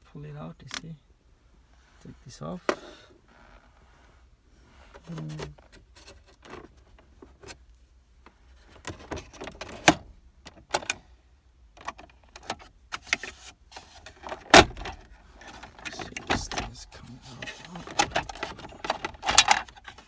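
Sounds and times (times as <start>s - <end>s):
plastic trim panel clicking and rattling: 11.8s - 16.8s, 17.4s - 20.0s.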